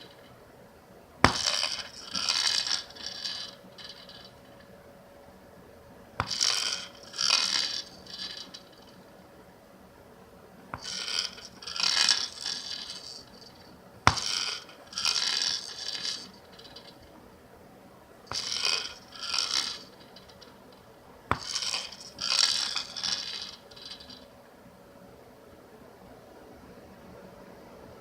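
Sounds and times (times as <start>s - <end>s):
ball rattling along plastic track: 1.2s - 4.7s, 6.2s - 9.0s, 10.8s - 17.0s, 18.3s - 20.6s, 21.3s - 24.2s.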